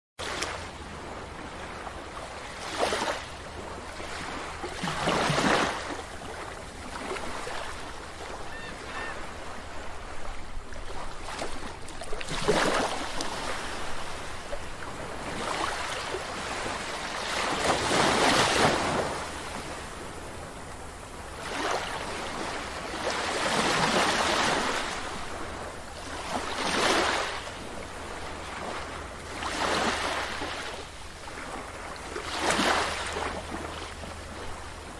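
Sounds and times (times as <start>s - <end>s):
sea waves breaking on beach: 0.2s - 34.9s
rushing water: 2.1s - 27.5s.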